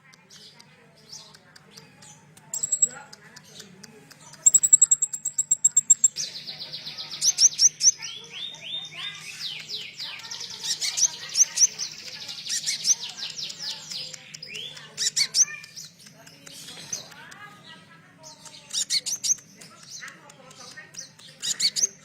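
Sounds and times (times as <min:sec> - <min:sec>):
songbird singing: 0:00.0 - 0:22.0
sharp bird chirps: 0:02.5 - 0:03.1, 0:04.3 - 0:16.8.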